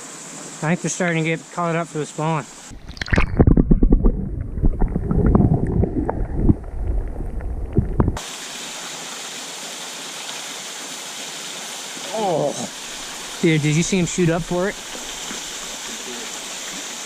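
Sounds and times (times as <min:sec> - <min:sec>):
mountain stream rushing: 0:08.2 - 0:17.0.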